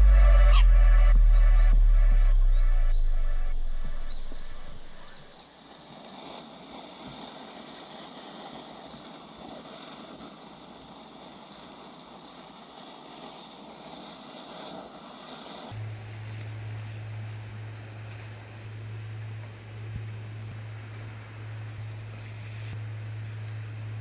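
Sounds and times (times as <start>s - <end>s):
high-pitched drone: 0.0s - 5.3s
steady low hum: 0.0s - 5.4s, 15.7s - 24.0s.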